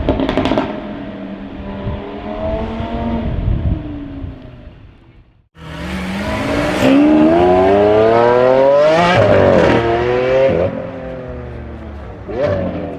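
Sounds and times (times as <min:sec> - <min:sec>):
car engine accelerating: 0:05.6 - 0:12.9.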